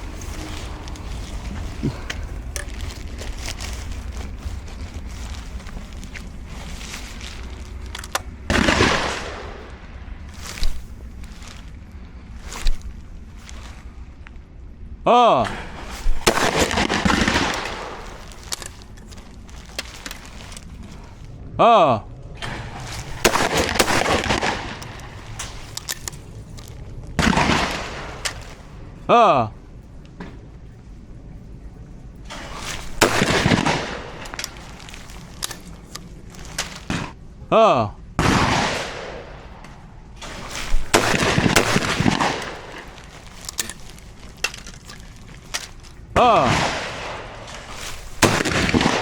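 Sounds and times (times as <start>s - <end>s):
scattered clicks: 0.0s - 8.9s
gun handling rustling and clicks: 0.0s - 9.6s, 10.2s - 14.5s, 15.8s - 21.3s, 22.4s - 28.8s, 32.2s - 37.2s, 39.6s - 49.0s
shotgun blast: 8.5s - 9.8s, 22.4s - 25.5s, 27.2s - 28.3s, 33.0s - 34.3s, 38.2s - 39.5s, 40.3s - 43.0s, 46.2s - 47.6s, 48.2s - 49.0s
shotgun shot: 38.2s - 39.5s, 46.2s - 47.5s, 48.2s - 49.0s.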